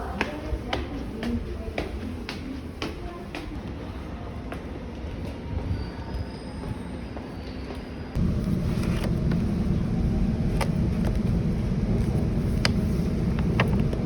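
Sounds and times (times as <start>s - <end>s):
road vehicle rumbling: 8.1s - 14.0s.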